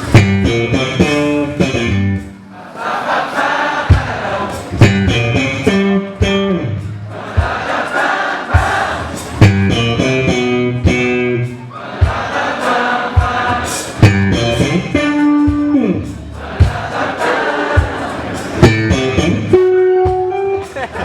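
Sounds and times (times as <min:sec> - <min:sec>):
funk band playing: 0:00.0 - 0:02.5, 0:03.9 - 0:21.0
people singing along: 0:02.5 - 0:05.7, 0:07.0 - 0:09.4, 0:11.5 - 0:19.5.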